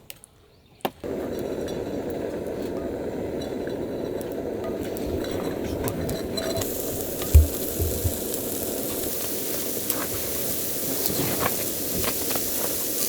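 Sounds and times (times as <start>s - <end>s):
rushing cooking noise: 1.0s - 13.0s
metal cookware clinking: 4.6s - 8.0s.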